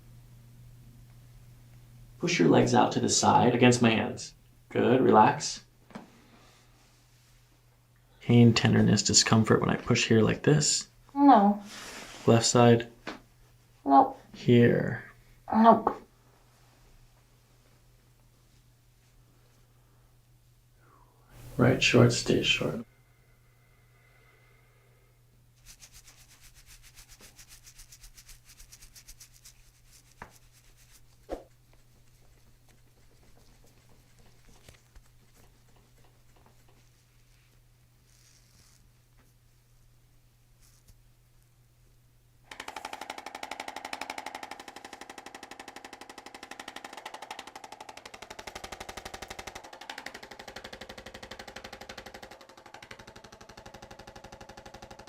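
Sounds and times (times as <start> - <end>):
hand rubbing strokes: 25.5 - 39.8, 40.5 - 41.0
rapid percussive tapping: 42.5 - 55.0.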